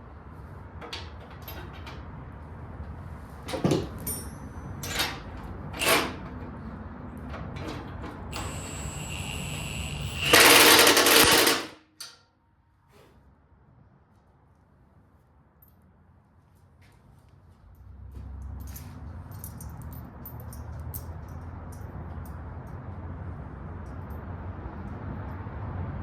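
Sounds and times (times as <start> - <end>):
metal tools clinking: 3.9 - 6.1, 10.0 - 12.1
power tool whining and rattling: 7.7 - 11.8.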